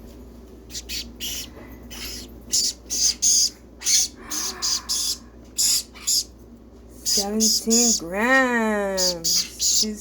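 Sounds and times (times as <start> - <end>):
parrot chick begging calls: 0.7 - 6.4, 7.0 - 8.1, 9.0 - 10.0.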